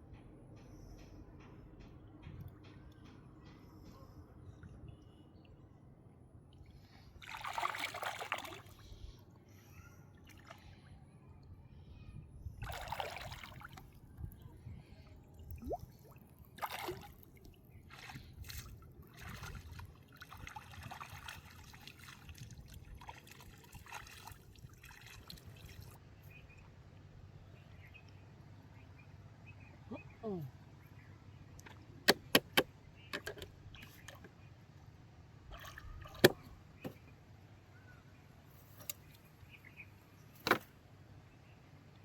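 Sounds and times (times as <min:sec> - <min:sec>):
river water splashing: 0:07.2 - 0:08.8, 0:12.6 - 0:13.9, 0:15.7 - 0:22.2, 0:35.5 - 0:36.6.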